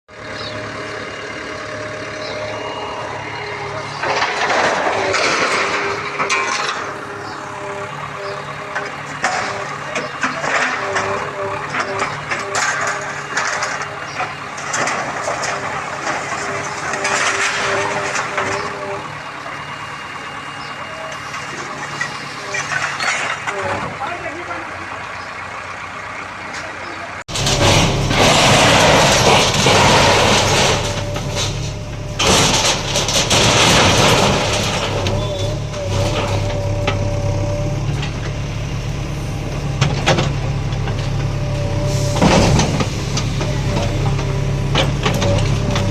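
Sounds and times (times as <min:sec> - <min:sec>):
heavy machinery engine hum: 0:00.1 - 0:45.9
knocks and clatter of breaking material: 0:04.0 - 0:07.0, 0:09.2 - 0:18.8, 0:27.3 - 0:37.1.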